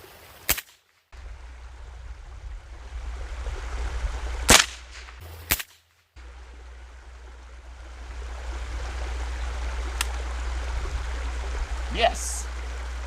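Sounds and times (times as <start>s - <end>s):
rifle shots: 4.5s - 5.8s.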